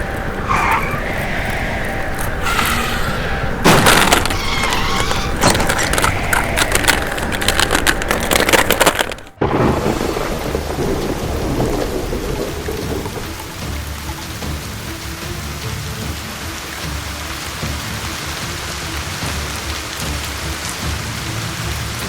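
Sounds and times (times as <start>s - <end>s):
thunder crack: 0.0s - 14.8s
thunder crackling and rumbling: 0.0s - 17.0s
steady rain: 0.0s - 22.0s.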